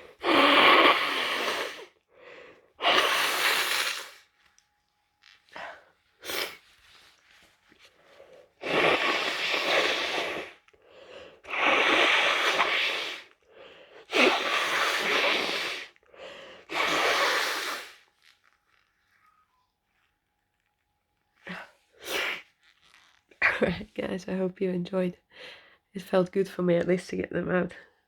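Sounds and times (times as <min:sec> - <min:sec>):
forceful nose blowing: 0:00.0 - 0:04.4, 0:05.6 - 0:07.2, 0:08.1 - 0:18.4, 0:21.4 - 0:23.1
stifled sneeze: 0:06.2 - 0:06.6, 0:08.6 - 0:10.6, 0:11.5 - 0:13.3, 0:14.1 - 0:15.9, 0:16.7 - 0:18.0, 0:21.5 - 0:22.5.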